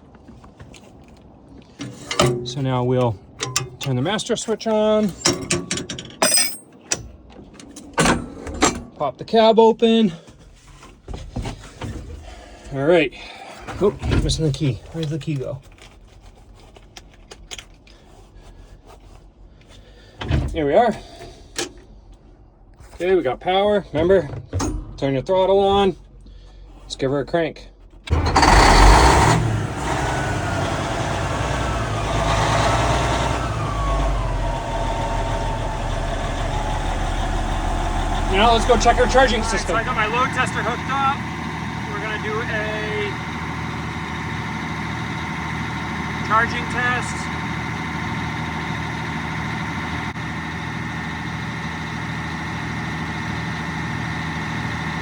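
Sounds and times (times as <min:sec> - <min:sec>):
diesel engine starting and idling: 0:12.0 - 0:15.6, 0:28.0 - 0:55.0.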